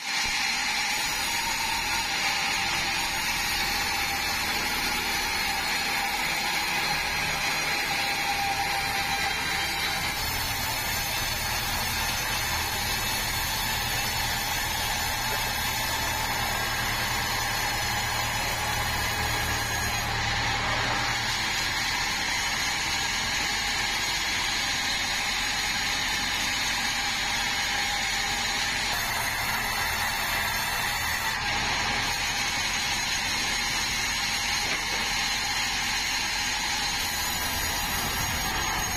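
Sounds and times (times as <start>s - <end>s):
band sawmill running: 0.0s - 38.9s.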